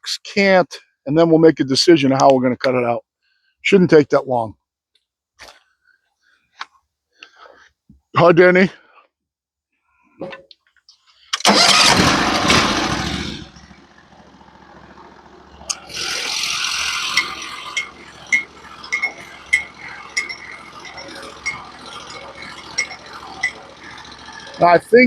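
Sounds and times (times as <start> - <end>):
sawmill engine running: 11.4 - 25.0.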